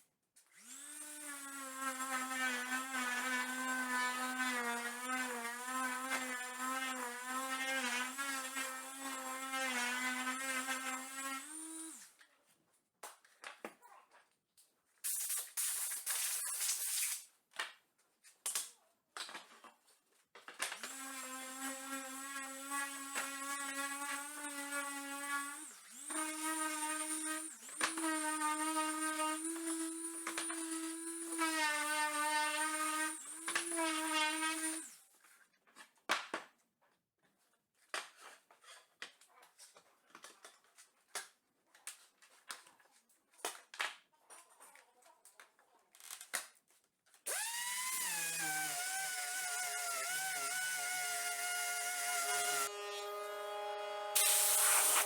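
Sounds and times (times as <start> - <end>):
short hissy bursts: 15.0 - 17.2, 54.2 - 55.0
cnc router motor whine: 47.3 - 55.0.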